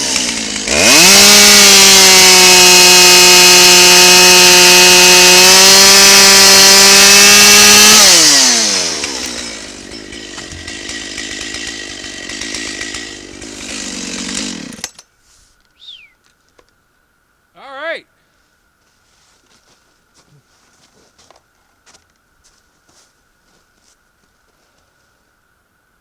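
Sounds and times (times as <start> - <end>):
chainsaw running: 0.0 - 15.0.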